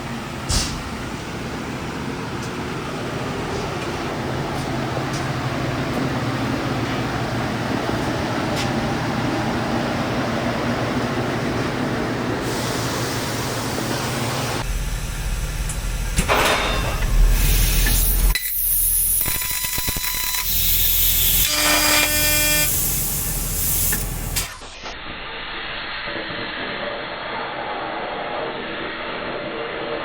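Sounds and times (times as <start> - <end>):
laser cutting machine hissing: 12.3 - 16.0, 17.2 - 30.0.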